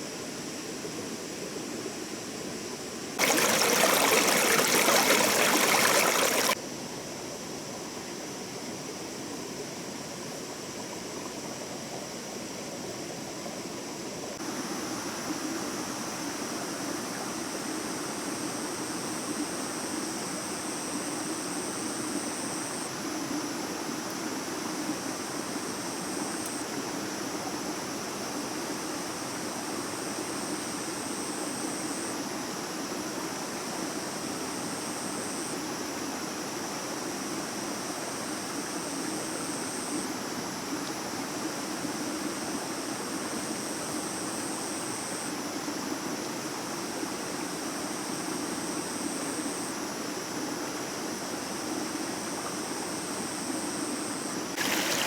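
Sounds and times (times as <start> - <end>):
stream running over rocks: 3.2 - 6.6, 54.5 - 55.0
faint high-pitched whine: 3.2 - 9.8.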